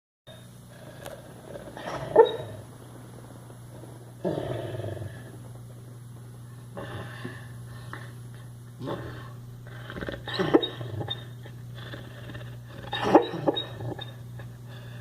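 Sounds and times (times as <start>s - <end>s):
dog snoring: 0.3s - 2.7s, 3.7s - 5.4s, 8.8s - 15.0s.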